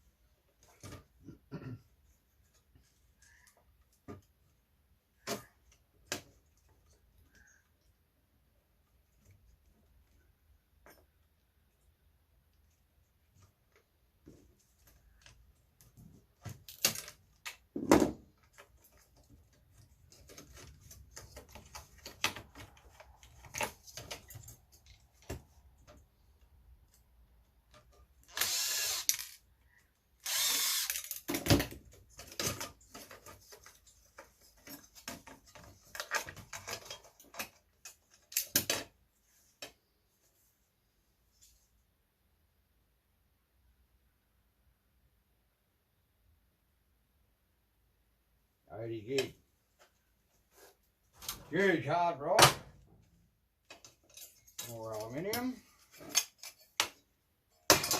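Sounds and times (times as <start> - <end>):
power drill running: 28.3 - 29.4, 30.2 - 31.1
tools and metal parts clattering: 31.3 - 38.9, 53.7 - 57.9.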